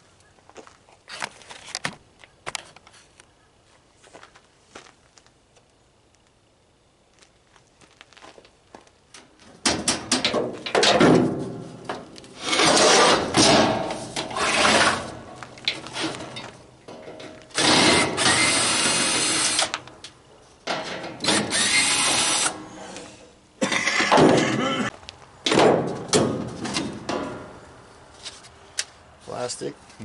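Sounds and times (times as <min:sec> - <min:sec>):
power drill running: 0:17.5 - 0:19.8, 0:21.2 - 0:22.6.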